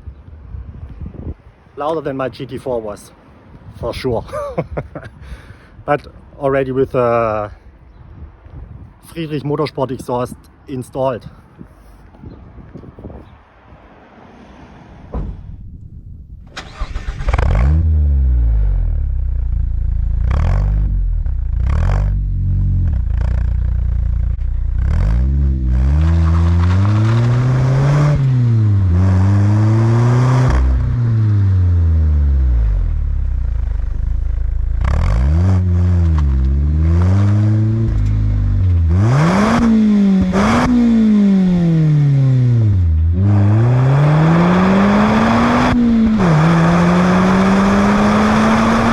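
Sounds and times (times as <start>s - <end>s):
car engine revving: 16.6s - 48.9s.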